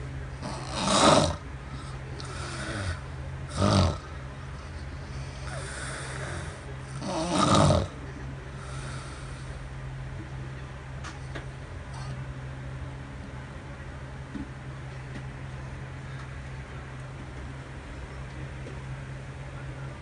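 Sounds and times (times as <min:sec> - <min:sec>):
steady low hum: 0:00.0 - 0:20.0
man snoring: 0:00.4 - 0:04.1, 0:05.2 - 0:08.0.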